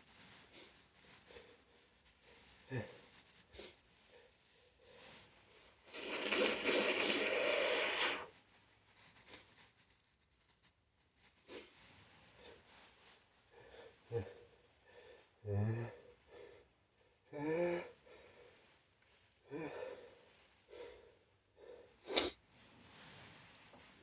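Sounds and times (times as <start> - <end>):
person gasping breaths: 19.4 - 22.3
person sneezing: 22.0 - 22.4.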